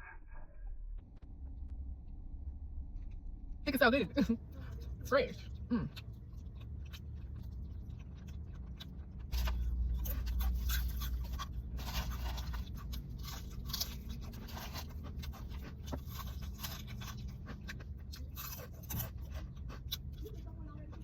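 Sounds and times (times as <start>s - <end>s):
low steady hum: 0.0s - 21.0s
person chewing crunchy food: 4.6s - 21.0s.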